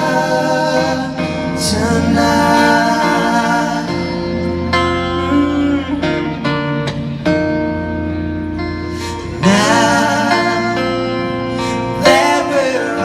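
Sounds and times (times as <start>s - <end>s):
man singing: 0.0s - 6.6s, 9.2s - 13.0s
strummed guitar chords: 0.0s - 13.0s.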